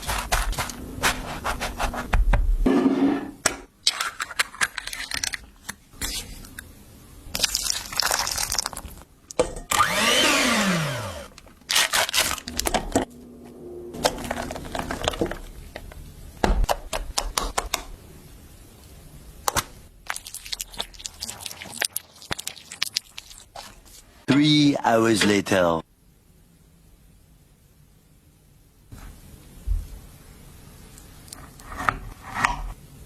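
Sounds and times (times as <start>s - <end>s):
kitchen motor winding down: 9.7s - 11.4s.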